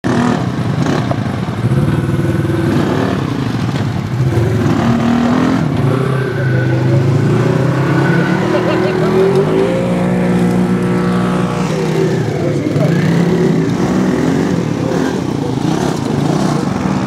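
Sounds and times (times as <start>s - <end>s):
small engine revving: 4.2s - 17.0s.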